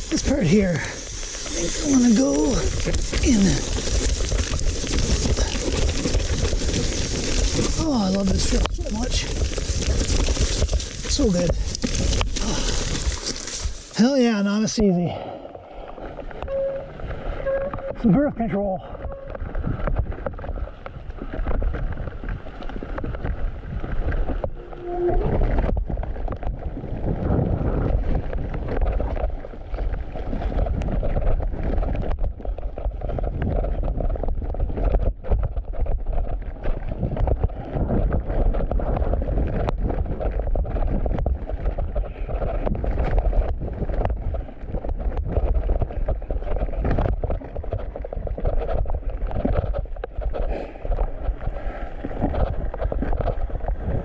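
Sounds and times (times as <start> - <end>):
bike knocking and rattling: 0.8 - 13.9.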